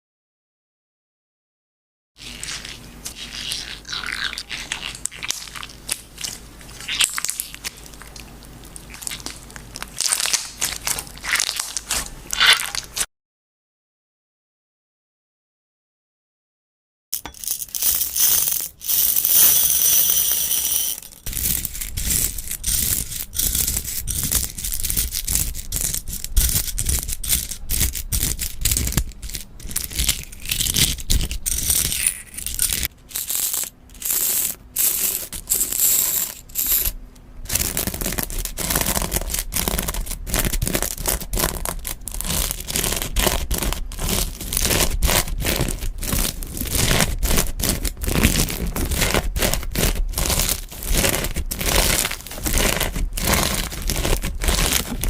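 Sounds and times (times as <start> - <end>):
slime crackling and popping: 6.8 - 13.0.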